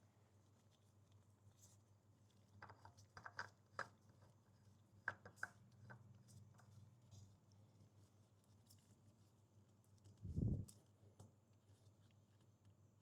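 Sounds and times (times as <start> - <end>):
low steady hum: 0.0 - 13.0
oil filter clicking and scraping: 2.6 - 6.7.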